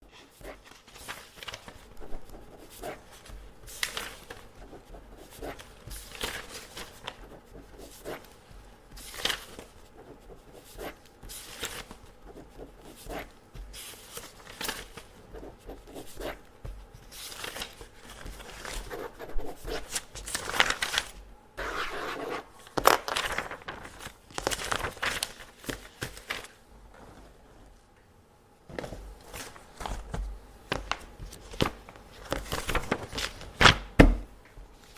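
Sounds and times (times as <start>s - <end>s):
paper crinkling: 0.1s - 26.6s, 28.7s - 33.9s
pen scratching on paper: 9.8s - 11.5s, 15.3s - 16.4s, 18.8s - 19.9s, 21.6s - 22.4s.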